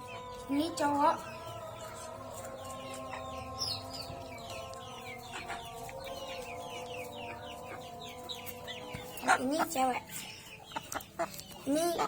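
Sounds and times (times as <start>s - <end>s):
chickens clucking: 0.0s - 12.0s.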